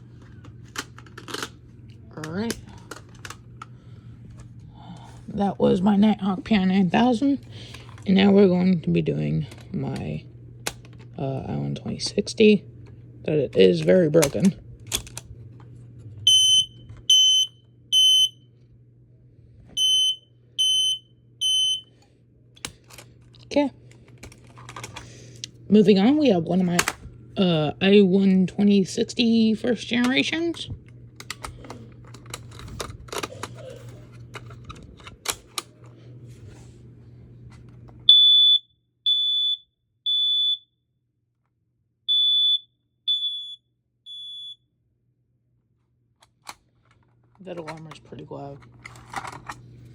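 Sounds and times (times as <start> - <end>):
clicks and knocks of handling: 0.1 - 3.7, 22.6 - 25.1, 30.0 - 36.0, 46.2 - 49.7
smoke alarm beeping: 16.3 - 18.5, 19.8 - 21.9, 38.1 - 40.7, 42.1 - 44.7.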